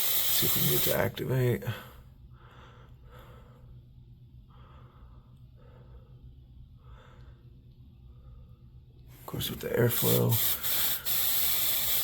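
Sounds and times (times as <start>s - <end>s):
airflow hum through ductwork: 0.0s - 12.0s.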